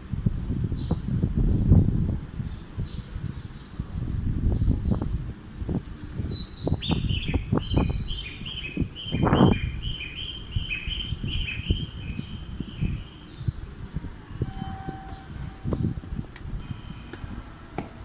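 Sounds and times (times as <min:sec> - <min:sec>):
wind buffeting microphone: 0:00.0 - 0:18.0
songbird chirping: 0:05.9 - 0:17.4.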